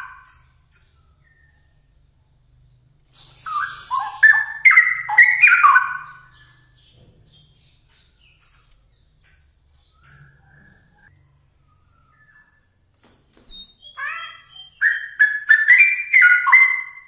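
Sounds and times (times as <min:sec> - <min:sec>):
faint high chirps: 0:00.0 - 0:17.0
bird singing liquid notes: 0:03.2 - 0:12.8, 0:13.5 - 0:17.0.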